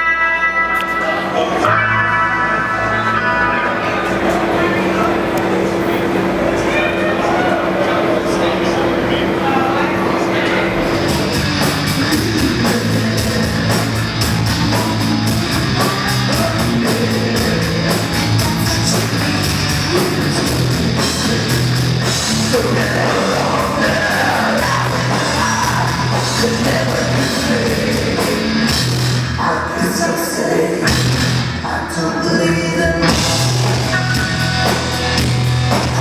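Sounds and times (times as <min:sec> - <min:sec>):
distorted guitar and bass: 0:00.0 - 0:30.0, 0:30.8 - 0:36.0
person singing: 0:11.0 - 0:28.8
drum kit hits: 0:33.0 - 0:36.0.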